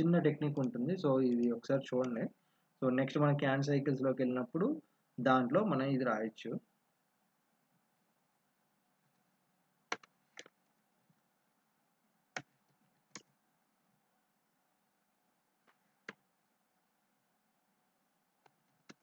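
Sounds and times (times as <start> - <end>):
computer mouse clicks: 0.5 - 2.2, 9.9 - 10.6.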